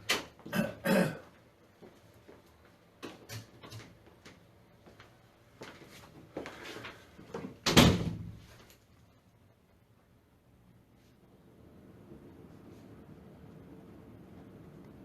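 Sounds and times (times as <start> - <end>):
door shutting with loud thump: 7.6 - 8.4.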